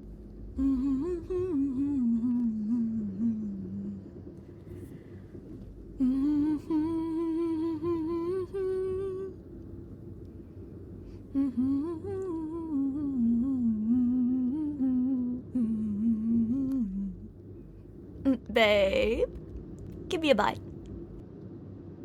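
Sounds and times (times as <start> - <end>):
low background rumble: 0.0 - 22.0.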